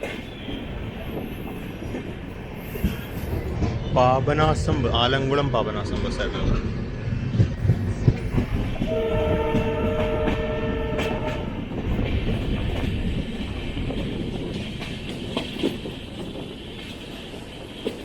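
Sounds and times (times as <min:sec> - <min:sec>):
train rumbling on track: 0:00.0 - 0:18.0
two-note train horn: 0:08.9 - 0:11.6.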